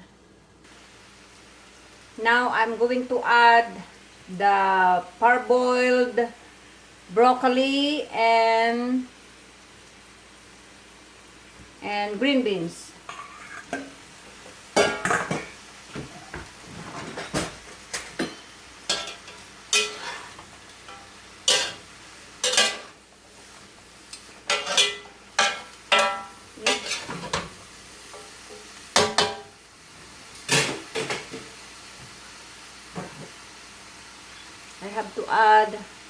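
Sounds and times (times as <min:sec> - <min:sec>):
faint sizzle: 0:00.0 - 0:36.0
utensil clanking against pan: 0:18.0 - 0:20.3, 0:22.4 - 0:23.0, 0:24.5 - 0:27.5, 0:29.0 - 0:29.5.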